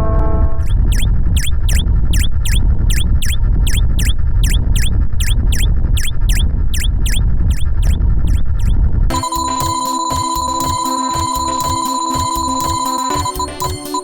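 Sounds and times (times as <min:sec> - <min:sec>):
steady low rumble: 0:00.0 - 0:09.4
rapid falling high chirps: 0:00.6 - 0:14.0.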